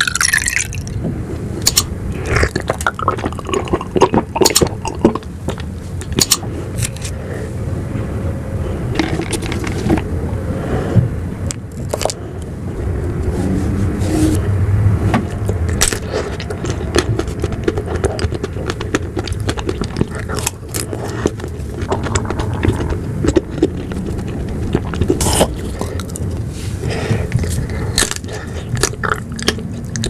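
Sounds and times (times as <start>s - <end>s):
wet mouth eating sounds: 0.0s - 7.2s, 8.9s - 10.1s, 15.2s - 30.0s
steady low rumble: 0.0s - 30.0s.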